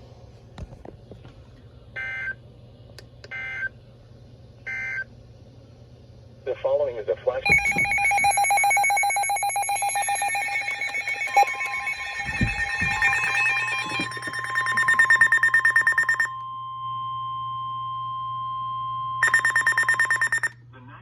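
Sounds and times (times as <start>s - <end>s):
steady warning tone: 7.4s - 20.6s
rapid electronic beeps: 7.5s - 16.3s, 19.2s - 20.5s.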